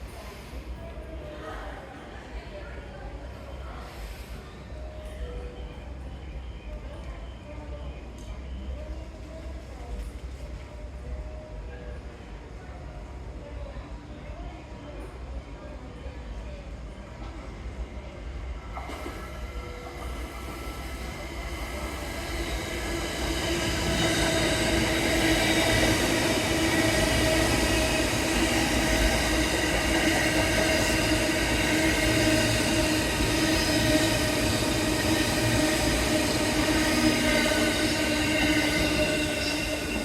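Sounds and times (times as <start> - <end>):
train equipment droning: 18.8 - 40.0.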